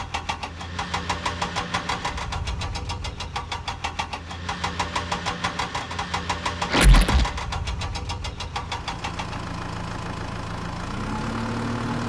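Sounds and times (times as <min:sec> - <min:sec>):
heavy vehicle engine chugging: 0:08.6 - 0:12.0.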